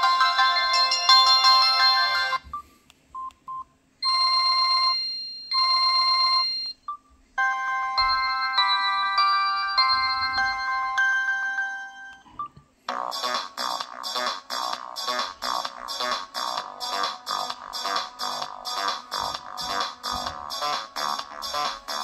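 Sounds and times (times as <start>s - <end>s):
melodic phone ringtone: 0.0s - 2.7s, 4.0s - 6.8s, 7.4s - 12.5s
phone ringing pattern: 0.0s - 2.7s, 4.0s - 13.3s.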